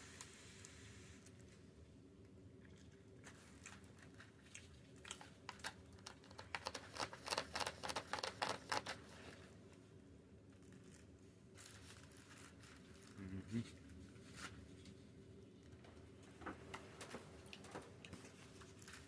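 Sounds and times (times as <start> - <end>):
sharp crisp crackles: 10.5 - 14.9, 16.4 - 19.0.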